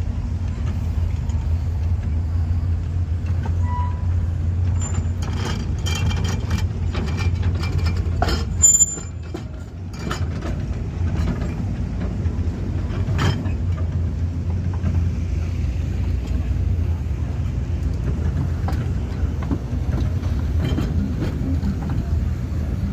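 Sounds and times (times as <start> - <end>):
train rumbling on track: 0.0 - 22.9
wheels and cars clanking: 0.0 - 22.9
high wheel squeal: 3.5 - 5.8, 7.7 - 9.3.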